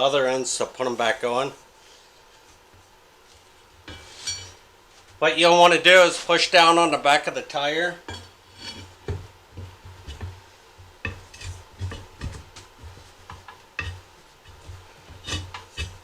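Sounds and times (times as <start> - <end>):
dull thumps: 9.0 - 16.0.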